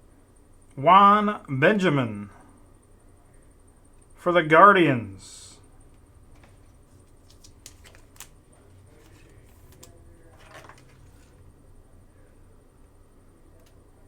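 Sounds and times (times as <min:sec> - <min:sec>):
low room hum: 0:00.0 - 0:14.0
cards scraping rustle: 0:06.4 - 0:11.4
trading cards clicking: 0:06.4 - 0:11.4.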